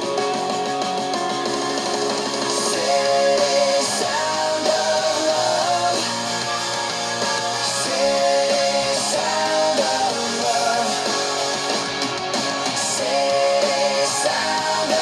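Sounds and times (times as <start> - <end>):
held melody line: 0.0 - 15.0
strummed guitar chords: 0.0 - 15.0.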